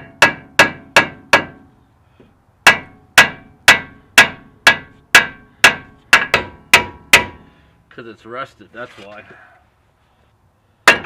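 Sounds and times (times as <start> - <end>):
hammer striking metal: 0.0 - 1.6, 2.7 - 7.4.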